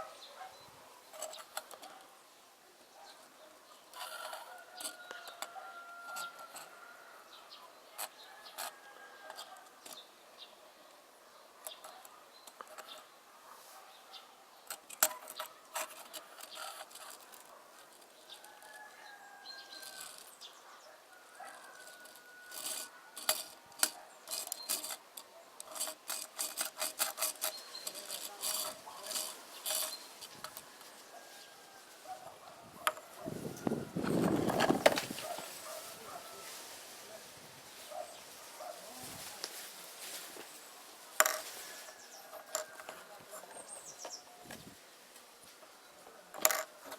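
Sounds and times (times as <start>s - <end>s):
plastic toy bricks clicking and rattling: 14.6s - 18.7s, 19.7s - 20.4s, 21.6s - 30.6s, 41.2s - 41.6s, 42.3s - 43.7s, 46.3s - 46.9s.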